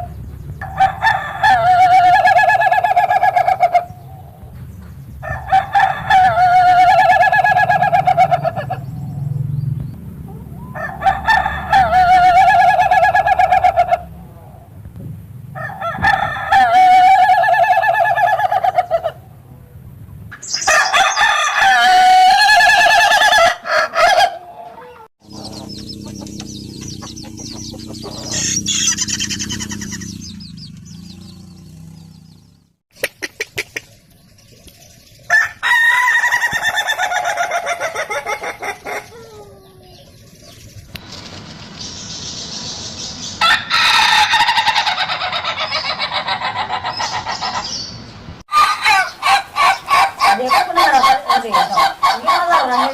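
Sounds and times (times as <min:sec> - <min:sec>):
rooster crowing with a stutter: 0:00.0 - 0:03.8, 0:05.2 - 0:08.7, 0:10.6 - 0:14.0, 0:15.5 - 0:18.6, 0:20.6 - 0:25.4, 0:35.3 - 0:38.4, 0:43.4 - 0:45.5.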